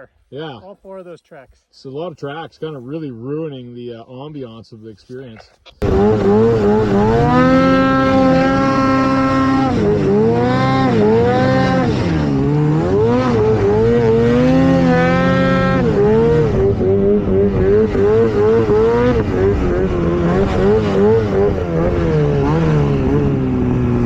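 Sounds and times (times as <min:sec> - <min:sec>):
snowmobile engine revving: 0:05.8 - 0:24.0.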